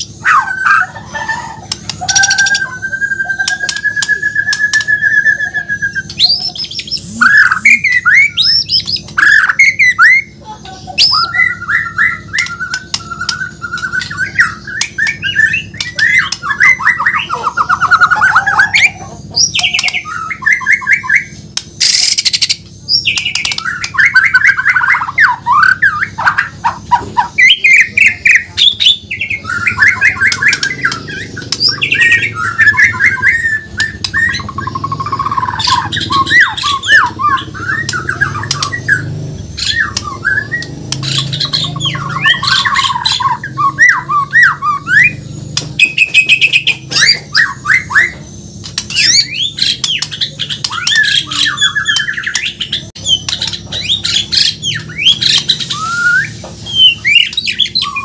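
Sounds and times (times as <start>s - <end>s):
bird singing trills and whistles: 0.0s - 58.0s
sharp bird clicks: 3.3s - 5.2s, 11.9s - 17.0s, 21.5s - 25.2s, 29.7s - 43.4s, 44.2s - 57.8s.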